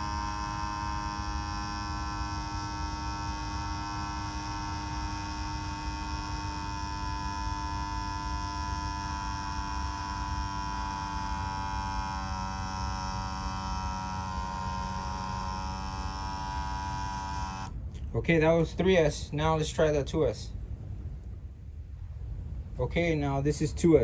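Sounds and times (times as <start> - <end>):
electric pump motor whine: 0.0 - 17.8.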